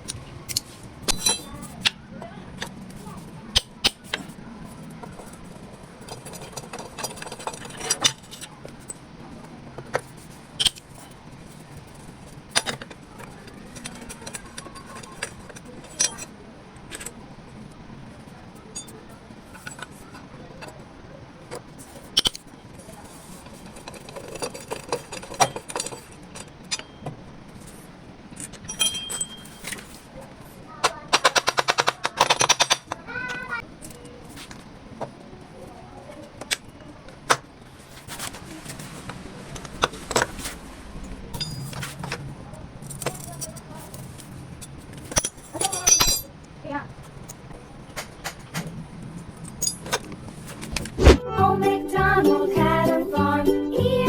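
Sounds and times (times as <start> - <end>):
tools clinking on metal: 0.0 - 2.0, 12.5 - 16.3, 18.7 - 20.8, 23.7 - 27.2, 28.4 - 30.0, 31.1 - 34.2, 41.4 - 42.2, 42.8 - 46.4, 49.4 - 50.2.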